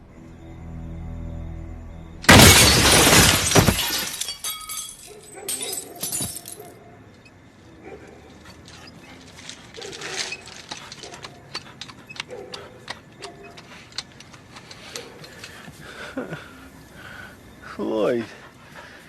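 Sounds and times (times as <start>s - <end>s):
broken glass clinking: 2.3s - 6.7s.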